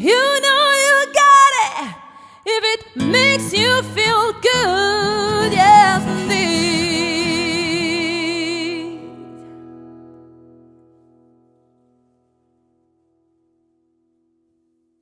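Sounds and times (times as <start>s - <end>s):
woman singing with vibrato: 0.0s - 9.4s
acoustic guitar chord ringing: 3.0s - 13.8s.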